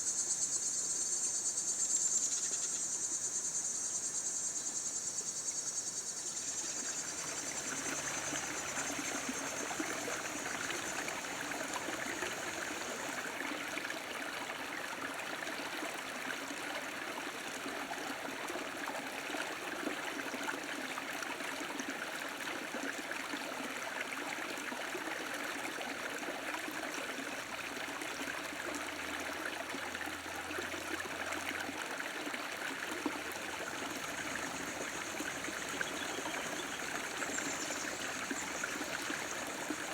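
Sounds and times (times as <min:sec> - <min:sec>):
small stream trickling: 0:00.1 - 0:39.9
insect chirring: 0:06.2 - 0:13.2, 0:33.4 - 0:39.9.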